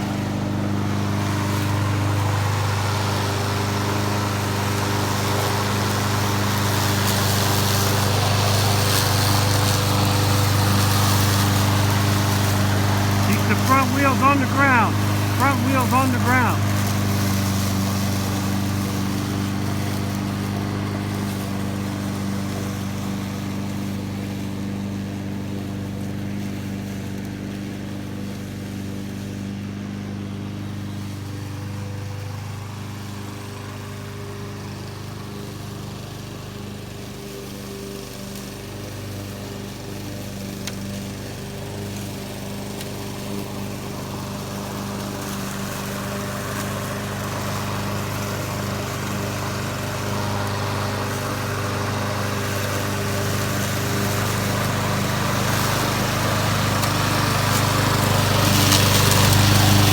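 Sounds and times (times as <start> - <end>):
lawn mower engine running: 0.0 - 59.9.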